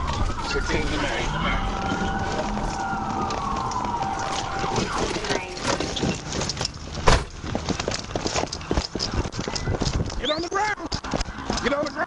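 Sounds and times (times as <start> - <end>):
police siren wailing: 0.0 - 6.7
loud thump: 7.0 - 7.4.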